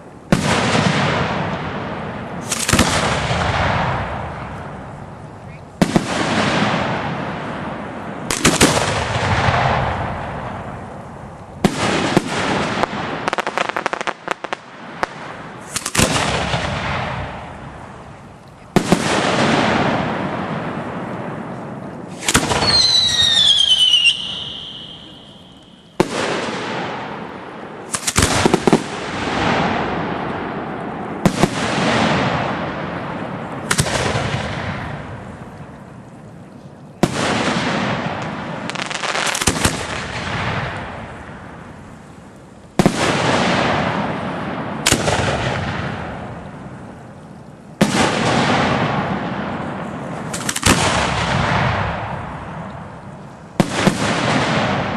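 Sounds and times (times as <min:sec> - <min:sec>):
firework bangs with echo: 0:00.0 - 0:05.2, 0:05.8 - 0:35.5, 0:37.0 - 0:41.7, 0:42.8 - 0:46.8, 0:47.8 - 0:54.9
firework crackling pops: 0:00.0 - 0:54.9
firework falling whistle: 0:22.1 - 0:26.5.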